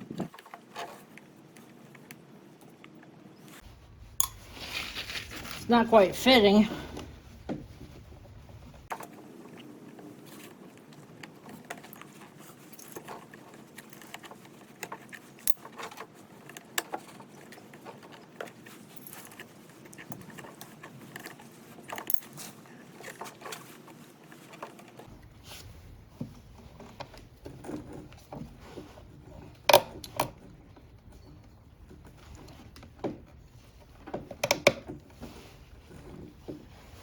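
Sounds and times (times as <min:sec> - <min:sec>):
light metallic clicks and clinks: 0:04.2 - 0:04.6.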